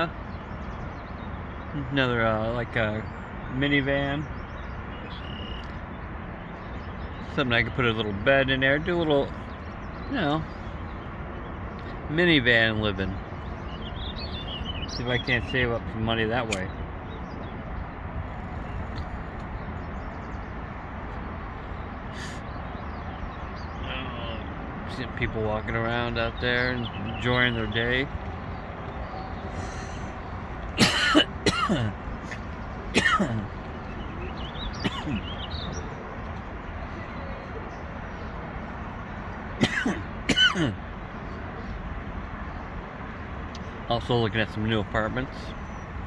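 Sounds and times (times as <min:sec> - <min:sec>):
low outdoor rumble: 0:00.0 - 0:46.0
man clearing his throat: 0:30.8 - 0:33.5, 0:34.8 - 0:35.3, 0:39.6 - 0:40.8.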